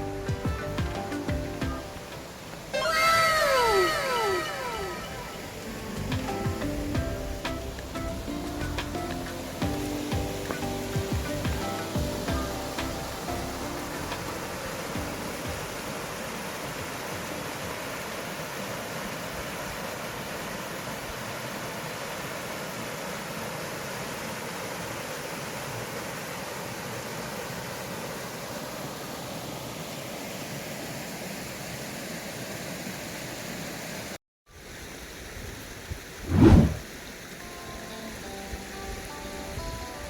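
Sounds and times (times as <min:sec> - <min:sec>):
stream flowing over rocks: 0:00.0 - 0:35.7.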